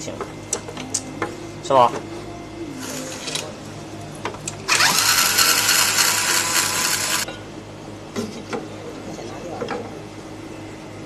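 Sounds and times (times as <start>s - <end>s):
handheld power tool spinning: 4.7s - 7.3s.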